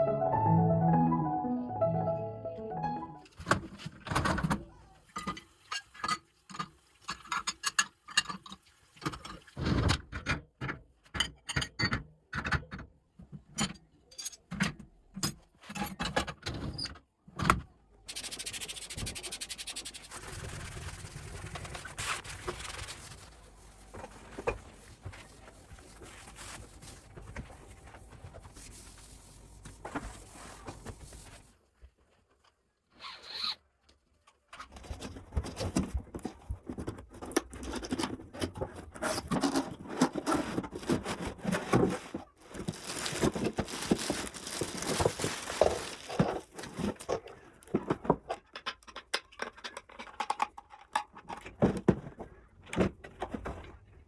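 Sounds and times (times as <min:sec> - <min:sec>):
scraping and rustling handling: 0:18.7 - 0:32.4, 0:34.7 - 0:48.2.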